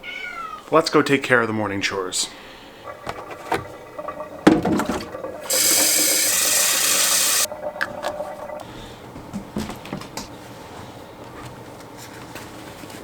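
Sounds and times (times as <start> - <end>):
running water: 1.7 - 8.7.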